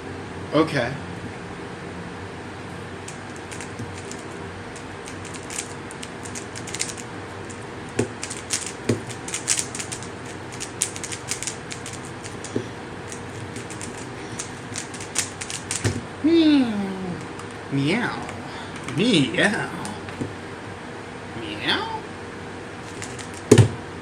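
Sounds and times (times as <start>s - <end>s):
puzzle cube clicking: 3.1s - 16.0s, 22.8s - 23.6s.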